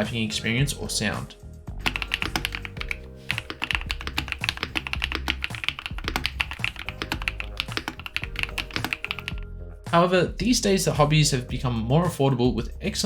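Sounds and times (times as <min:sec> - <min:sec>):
mechanical keyboard typing: 0:01.8 - 0:09.4.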